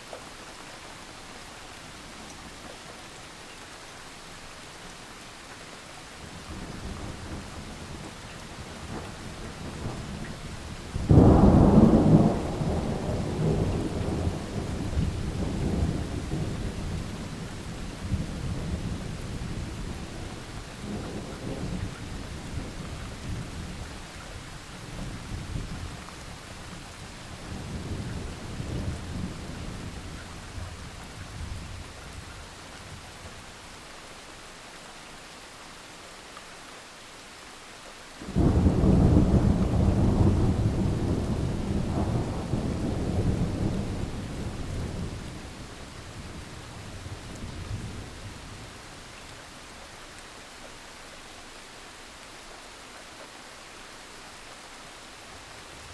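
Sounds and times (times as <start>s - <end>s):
steady rain: 0.0s - 55.9s
thunder rumbling and clapping: 38.3s - 45.6s.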